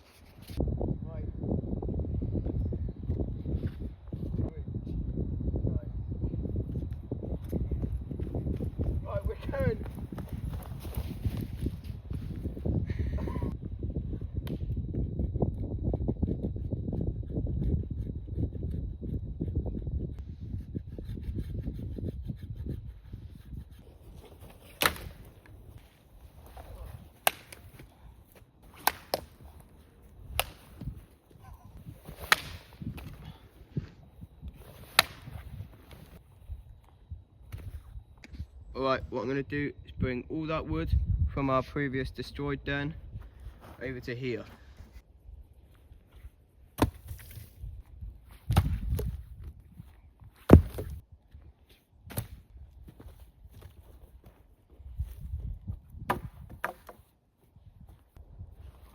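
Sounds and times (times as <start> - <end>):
dry sticks snapping: 24.7 - 25.6, 27.1 - 29.7, 30.3 - 30.9, 32.2 - 33.2, 34.9 - 35.3.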